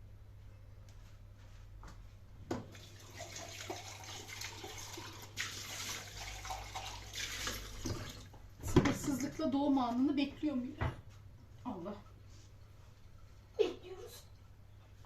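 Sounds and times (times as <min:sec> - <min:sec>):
water running: 0:02.5 - 0:10.0.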